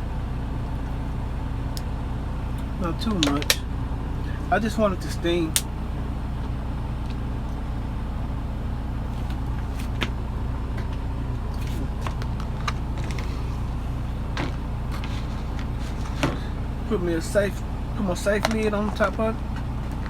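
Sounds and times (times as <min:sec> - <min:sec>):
engine idling: 0:00.0 - 0:20.0
handling clicks and taps: 0:02.6 - 0:03.6, 0:18.3 - 0:20.0.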